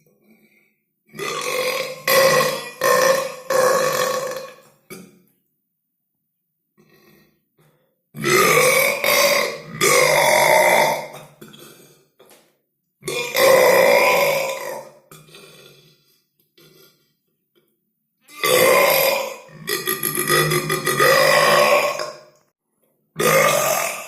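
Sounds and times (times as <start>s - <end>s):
person burping: 1.1s - 5.2s, 8.2s - 12.2s, 13.0s - 17.2s, 18.3s - 22.4s, 23.2s - 24.0s.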